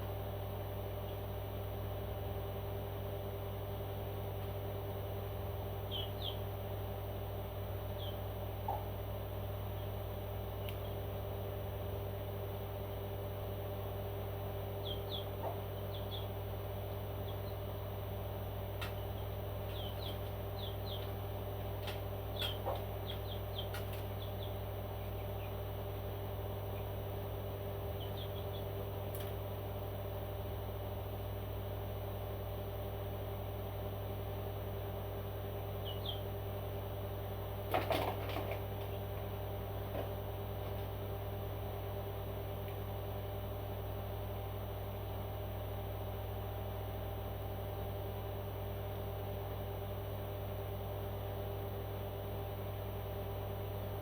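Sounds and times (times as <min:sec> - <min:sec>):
electrical hum: 0:00.0 - 0:54.0.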